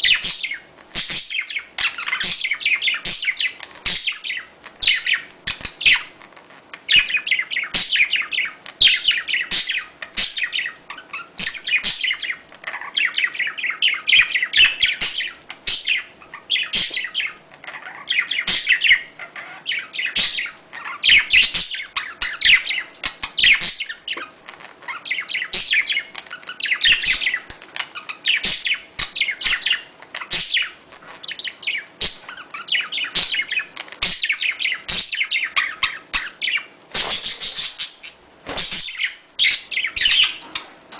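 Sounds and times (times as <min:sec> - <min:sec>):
budgerigars chirping and warbling: 0:00.0 - 0:40.9.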